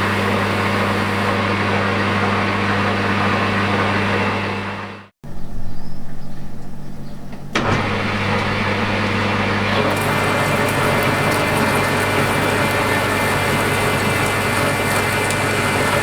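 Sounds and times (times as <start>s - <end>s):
metal lathe motor hum: 0.0s - 4.3s, 7.8s - 16.0s.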